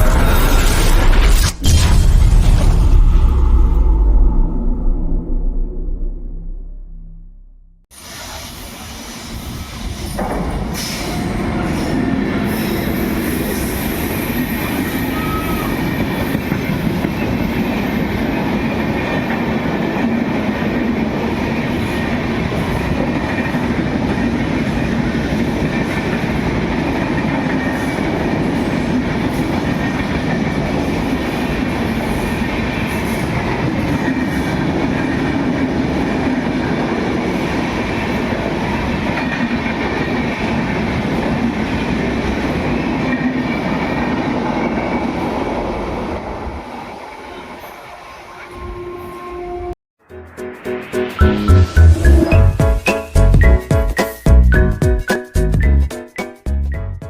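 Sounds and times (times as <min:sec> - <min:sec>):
train wheels rumbling on rails: 0:07.9 - 0:48.7.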